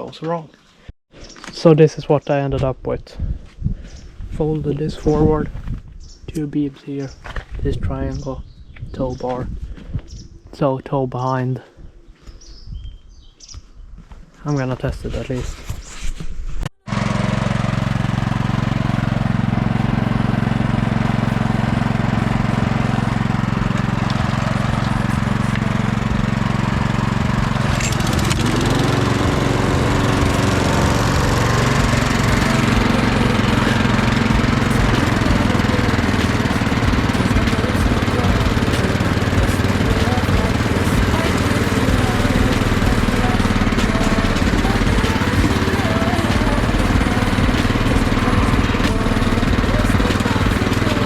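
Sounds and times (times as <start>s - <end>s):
small petrol mower engine running: 16.8s - 51.0s.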